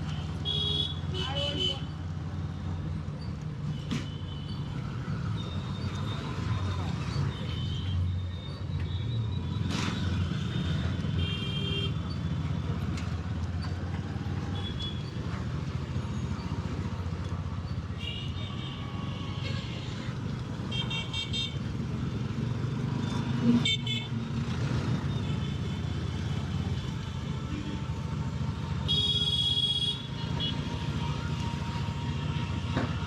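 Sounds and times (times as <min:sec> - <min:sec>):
road noise: 0:00.0 - 0:33.0
vehicle horn toots: 0:28.9 - 0:30.6.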